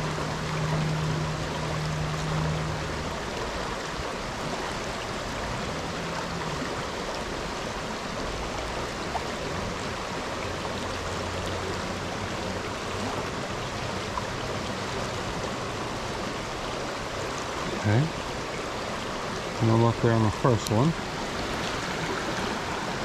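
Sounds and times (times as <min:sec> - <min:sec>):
creek water rushing: 0:00.0 - 0:23.0.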